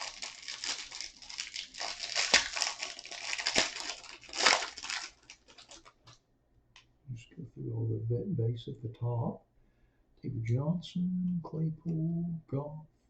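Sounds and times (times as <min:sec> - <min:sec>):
packaging ripping: 0:00.0 - 0:06.2
plastic wrap and cardboard crinkling: 0:00.0 - 0:06.2.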